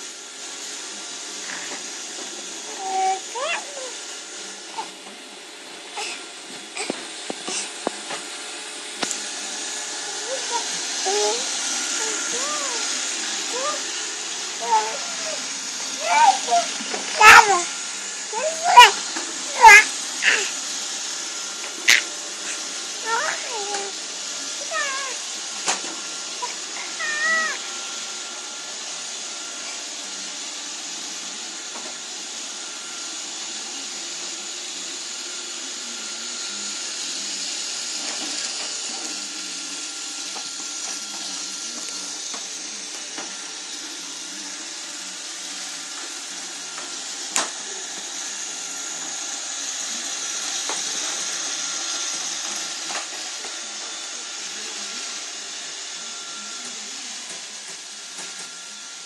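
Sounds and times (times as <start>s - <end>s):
robot vacuum cleaner running: 0.0s - 59.0s
wavering high-pitched cries: 10.2s - 20.6s, 26.4s - 27.7s.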